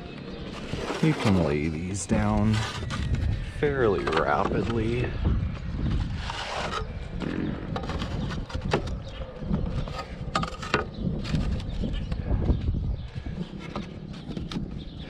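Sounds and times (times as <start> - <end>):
shingles scraping and handling: 0.4 - 5.2, 5.9 - 9.0, 9.7 - 12.1.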